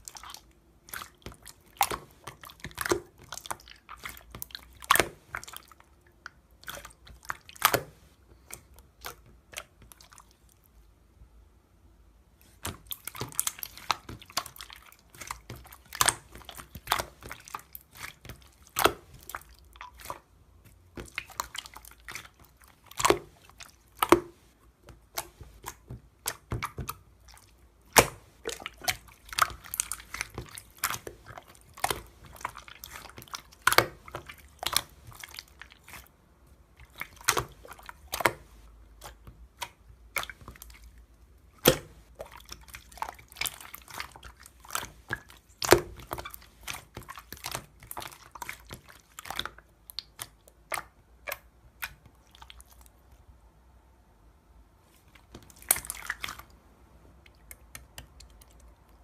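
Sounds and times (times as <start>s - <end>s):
slime wet clicks and pops: 27.9s - 36.0s, 41.6s - 52.6s.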